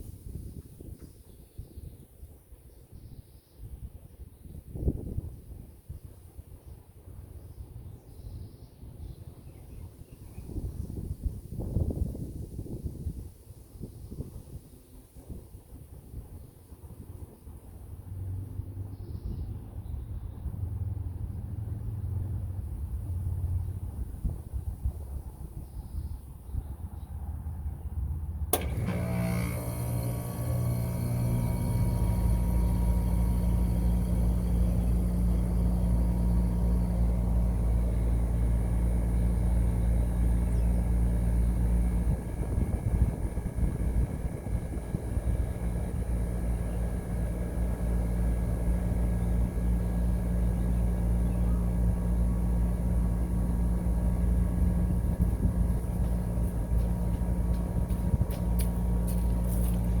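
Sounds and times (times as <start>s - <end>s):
air conditioner unit humming: 28.5s - 60.0s.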